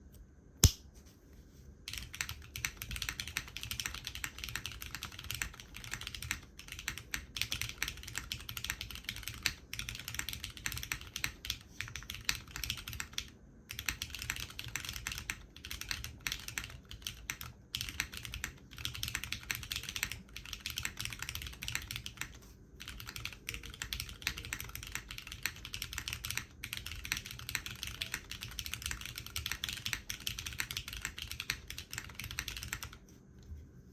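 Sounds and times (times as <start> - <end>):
sharp click: 0.1 - 0.9
mechanical keyboard typing: 1.9 - 33.0.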